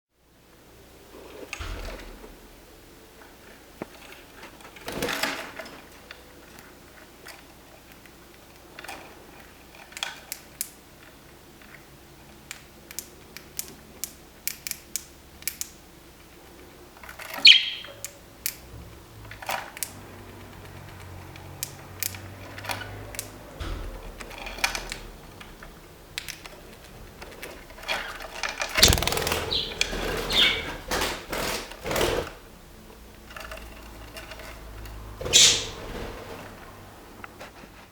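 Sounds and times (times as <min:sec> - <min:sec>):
budgerigar clicks and chirps: 0:17.4 - 0:18.2.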